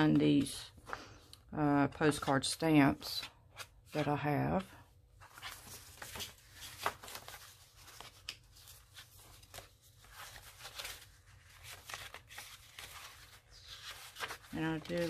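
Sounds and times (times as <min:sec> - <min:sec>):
pages turning: 0:05.2 - 0:15.0
paper rustling: 0:05.2 - 0:15.0.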